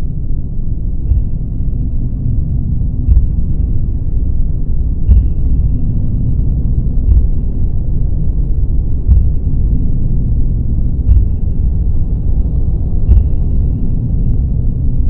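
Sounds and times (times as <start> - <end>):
deep steady rumbling: 0.0 - 15.0
soft pulse: 1.0 - 15.0.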